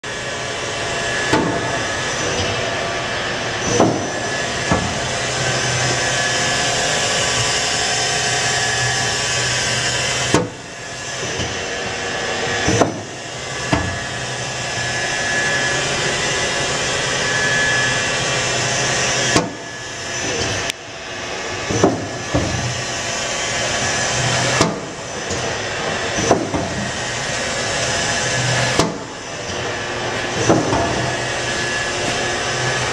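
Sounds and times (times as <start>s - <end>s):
lathe running: 0.0s - 32.9s.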